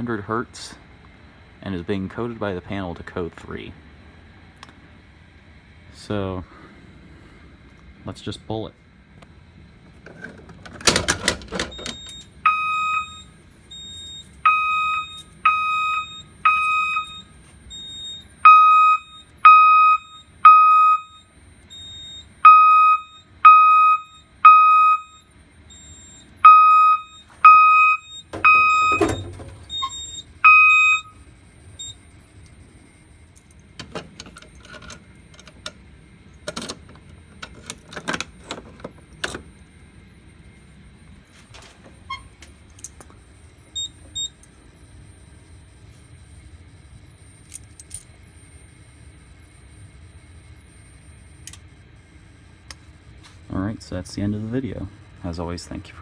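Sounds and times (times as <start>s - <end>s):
fire alarm horn beeps: 10.9s - 34.6s, 39.2s - 53.7s.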